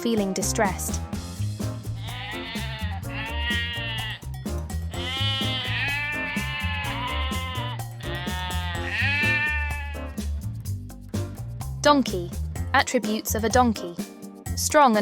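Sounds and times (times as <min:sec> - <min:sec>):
music with bass beat: 0:00.4 - 0:14.8
sheep bleating: 0:02.0 - 0:04.2, 0:04.9 - 0:10.2.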